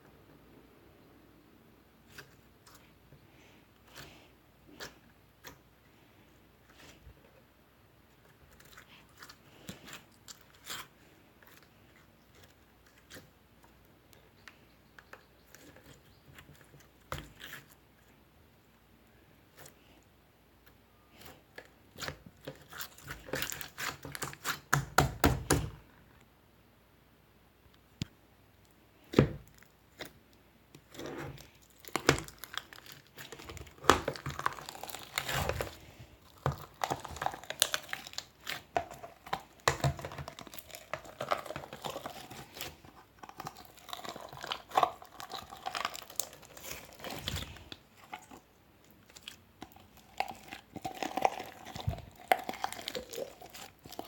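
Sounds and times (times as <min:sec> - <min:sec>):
crinkling and crackling: 0:27.7 - 0:54.0.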